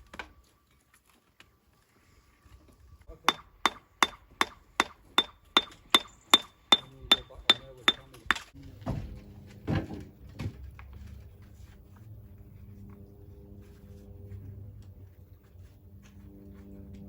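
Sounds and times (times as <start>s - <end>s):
hammer blows on metal: 3.1s - 8.4s
dull heavy knocks: 6.8s - 11.4s.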